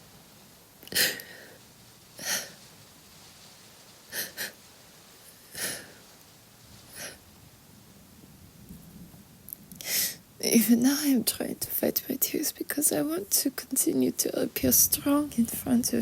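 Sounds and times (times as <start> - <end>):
woman sniffling: 0.9 - 1.6, 2.2 - 2.6, 4.1 - 4.6, 5.5 - 6.0.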